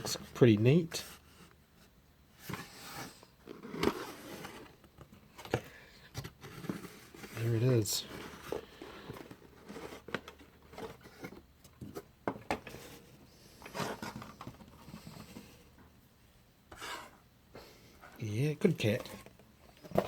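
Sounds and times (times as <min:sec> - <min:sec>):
packaging rubbing and scraping: 0:02.5 - 0:04.8, 0:06.4 - 0:11.5, 0:12.7 - 0:15.6.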